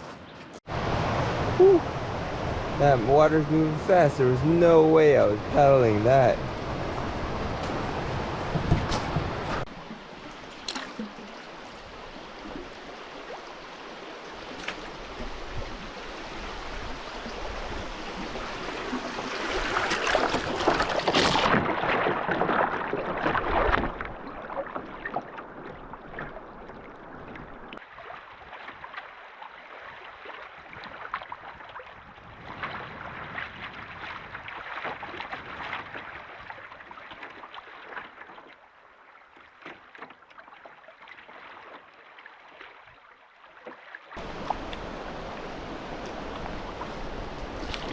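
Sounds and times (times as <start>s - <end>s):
water splashes: 0.0s - 47.9s
river water rushing: 0.7s - 22.1s, 44.2s - 47.9s.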